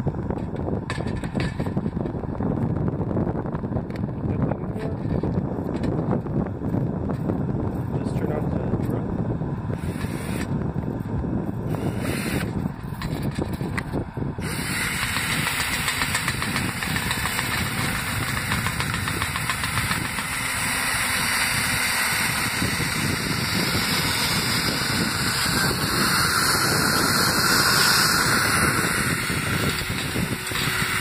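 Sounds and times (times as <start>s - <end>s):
electric drill motor whine: 9.7s - 10.6s, 11.6s - 31.0s
vacuum running: 14.4s - 31.0s.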